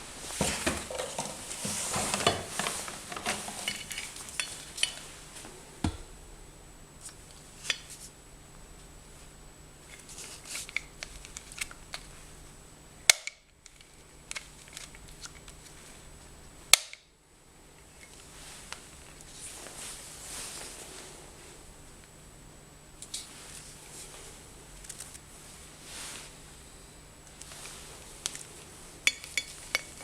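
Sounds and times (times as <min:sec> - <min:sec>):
soft rustle: 0:18.1 - 0:21.6, 0:23.3 - 0:26.5, 0:27.3 - 0:29.0.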